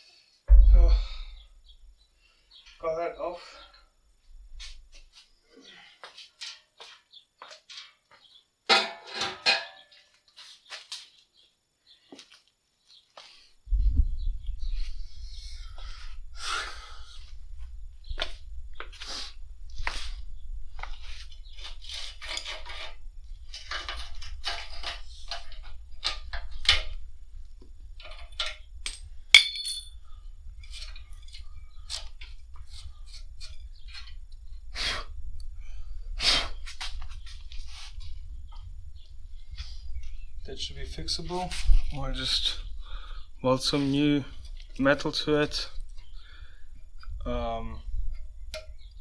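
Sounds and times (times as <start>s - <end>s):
heavy knocks: 0.5s - 1.5s
low rumble: 0.5s - 2.0s, 4.2s - 4.9s, 13.6s - 21.5s, 37.0s - 43.4s
metal tools clinking and scraping: 8.7s - 10.0s, 20.8s - 27.0s, 28.0s - 30.0s
ringing metal clink: 28.8s - 30.0s.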